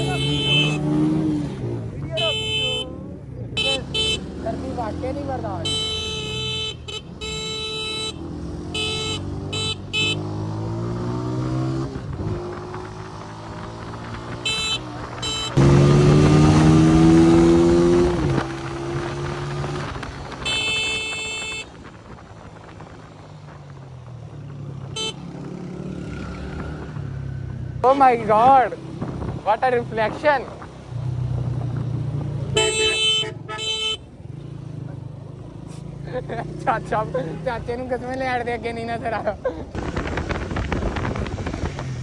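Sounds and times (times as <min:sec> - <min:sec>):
short horn blasts: 0:00.0 - 0:01.2, 0:02.1 - 0:03.0, 0:03.6 - 0:04.5, 0:05.6 - 0:10.4, 0:14.3 - 0:15.8, 0:20.4 - 0:21.7, 0:25.0 - 0:25.3, 0:32.5 - 0:34.1
vehicle engines running: 0:00.0 - 0:42.0
loud engine passing close: 0:15.1 - 0:20.4.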